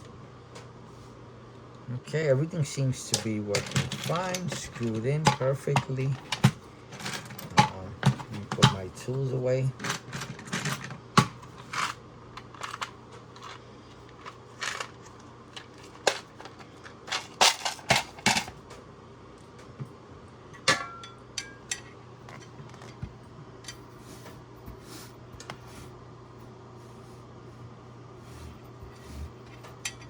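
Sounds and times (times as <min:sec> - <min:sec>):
tools clicking and clattering: 0:03.1 - 0:09.2, 0:09.8 - 0:18.6, 0:20.6 - 0:23.9, 0:29.4 - 0:30.0.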